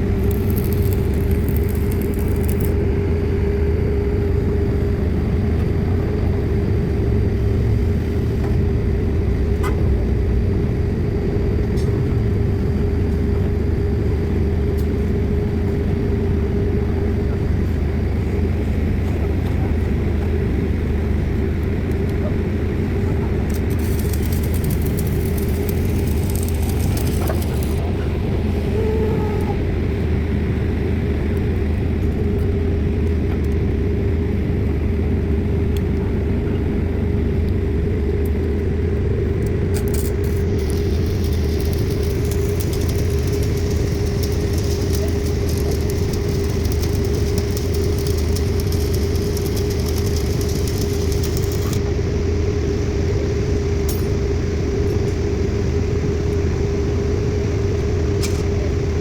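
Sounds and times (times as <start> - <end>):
diesel engine rumbling: 19.6 - 31.4, 38.5 - 51.8.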